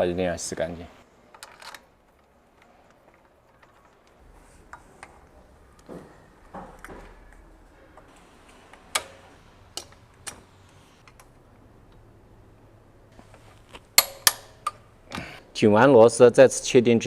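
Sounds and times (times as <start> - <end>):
hand tool metallic clicks: 14.0 - 14.8.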